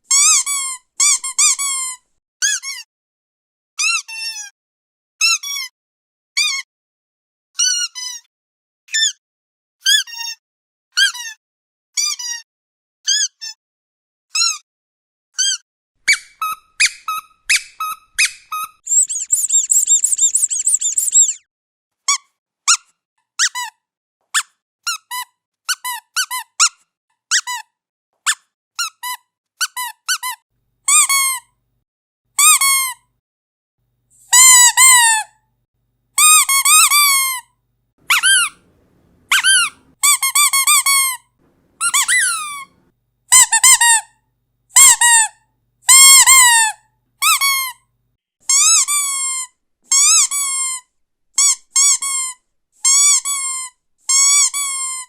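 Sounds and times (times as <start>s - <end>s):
squeaky dog toy squeaking: 0.1s - 2.9s, 3.8s - 4.5s, 5.2s - 5.7s, 6.4s - 6.7s, 7.6s - 8.3s, 8.9s - 9.2s, 9.8s - 10.4s, 11.0s - 11.4s, 12.0s - 12.4s, 13.1s - 13.6s, 14.3s - 14.6s, 15.4s - 21.4s, 22.1s - 31.5s, 32.4s - 33.0s, 34.2s - 35.4s, 36.2s - 55.0s.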